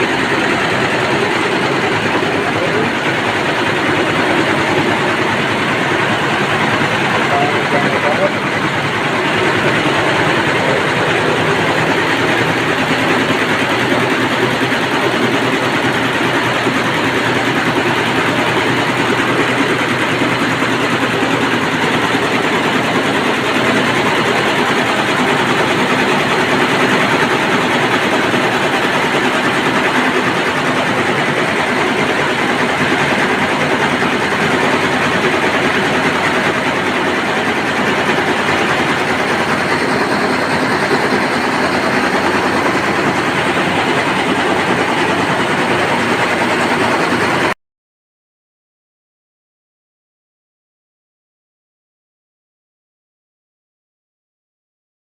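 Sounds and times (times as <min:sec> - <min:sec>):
embroidery machine stitching: 0:00.0 - 0:47.5.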